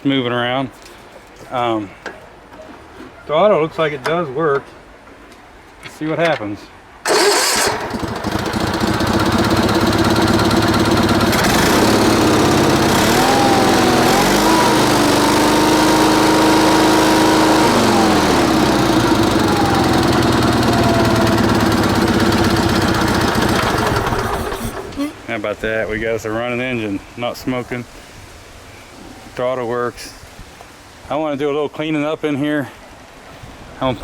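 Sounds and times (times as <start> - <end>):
garden tractor engine running: 7.0 - 25.1.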